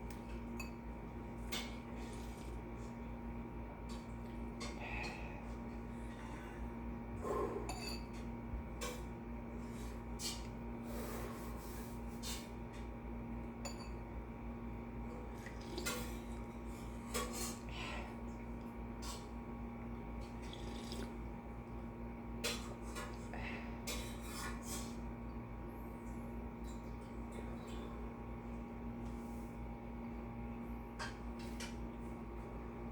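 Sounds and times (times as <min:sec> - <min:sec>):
electrical hum: 0:00.0 - 0:32.9
dishes and utensils clinking: 0:07.6 - 0:09.0.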